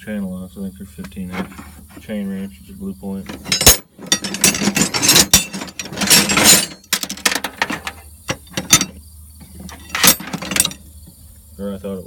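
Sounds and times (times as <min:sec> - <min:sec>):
metal tools rattling and clinking: 0:03.3 - 0:09.0, 0:09.6 - 0:10.9.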